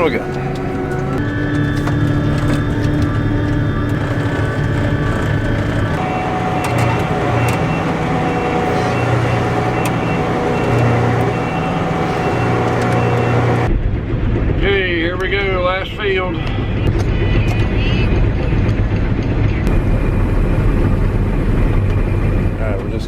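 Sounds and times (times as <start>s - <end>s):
diesel engine droning: 0.0s - 13.8s, 19.6s - 23.0s.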